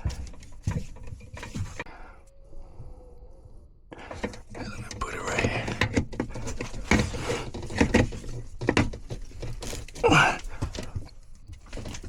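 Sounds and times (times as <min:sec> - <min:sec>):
person grunting: 0:10.0 - 0:10.6.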